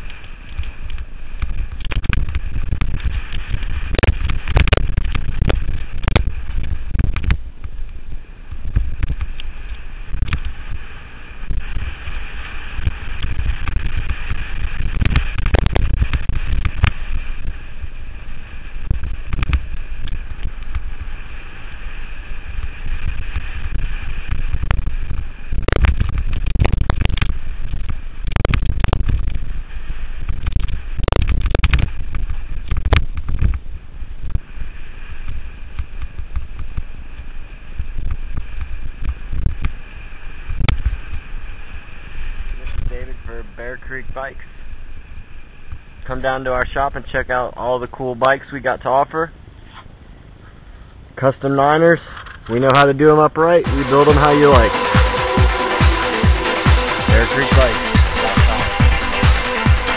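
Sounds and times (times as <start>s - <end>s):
bike knocks and rattles: 0.0s - 7.8s, 30.2s - 33.7s
wind buffeting microphone: 0.0s - 51.2s.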